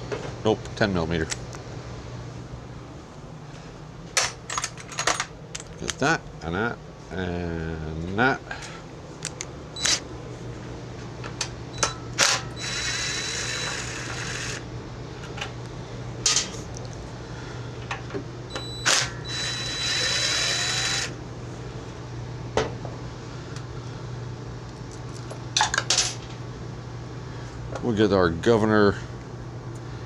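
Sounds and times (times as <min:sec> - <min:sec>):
rapid ratcheting of wrench: 0:12.2 - 0:14.6, 0:18.9 - 0:21.2.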